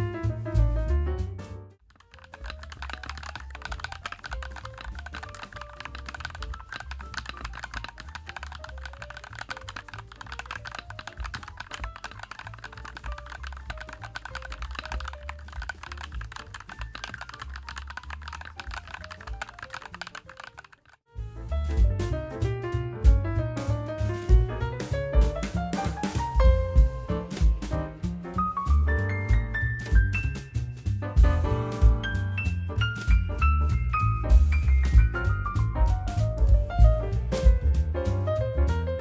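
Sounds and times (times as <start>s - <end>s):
mechanical keyboard typing: 1.8s - 21.1s.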